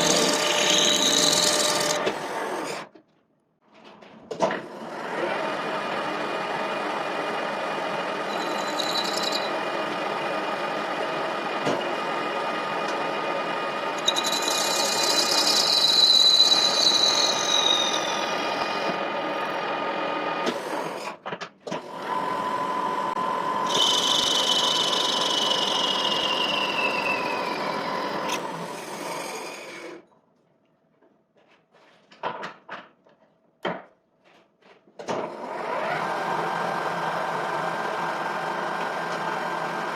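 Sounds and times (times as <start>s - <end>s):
high-pitched squeal from cutting: 0.0s - 2.1s, 8.3s - 9.6s, 14.0s - 19.0s, 23.6s - 28.4s
lathe machine hum: 0.0s - 2.3s, 5.0s - 21.0s, 22.0s - 29.5s, 35.5s - 39.9s.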